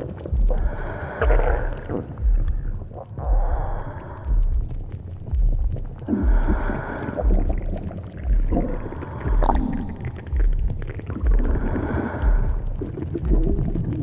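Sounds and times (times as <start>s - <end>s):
stomach growling: 0.0s - 14.0s.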